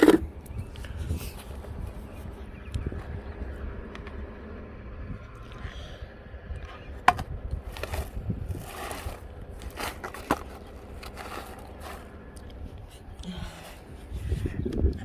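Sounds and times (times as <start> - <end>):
objects knocking and clicking: 0.0 - 0.3, 7.0 - 8.1
scraping and rustling: 0.0 - 0.3, 7.0 - 14.6
steady low rumble: 0.0 - 15.0.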